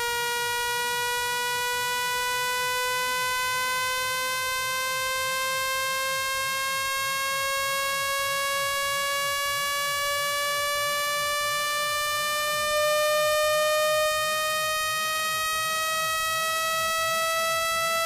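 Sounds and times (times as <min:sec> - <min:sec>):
buzzy electronic tone rising in pitch: 0:00.0 - 0:18.0.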